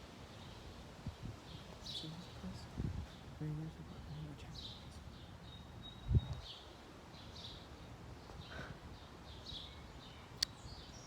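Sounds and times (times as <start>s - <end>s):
quiet outdoor background noise: 0.0s - 11.0s
bird chirping: 4.1s - 11.0s.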